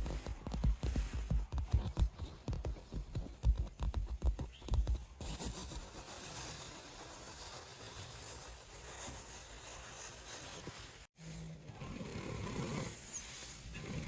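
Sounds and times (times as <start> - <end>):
scratching and knocking of handling: 0.0 - 5.9.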